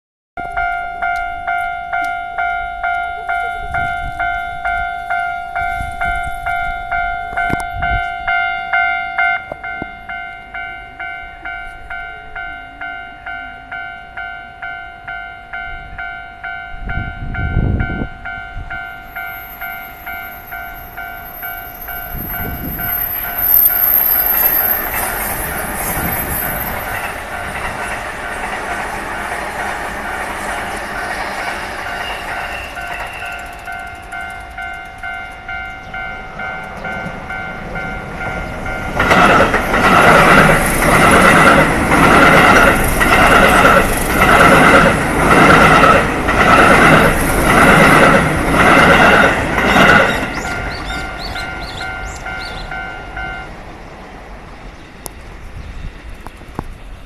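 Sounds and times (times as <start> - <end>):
level crossing alarm dinging: 0.4 - 28.5, 31.1 - 43.8
high-pitched train whine: 0.4 - 57.0
train passing: 0.4 - 57.0.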